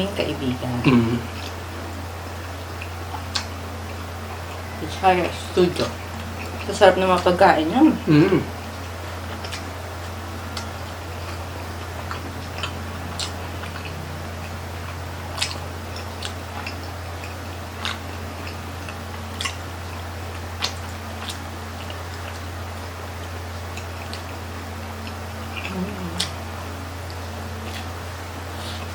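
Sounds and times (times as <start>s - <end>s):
steady low hum: 0.0s - 28.9s
wet chewing smacks: 2.6s - 4.6s, 8.4s - 24.4s, 25.0s - 26.4s, 27.1s - 28.9s.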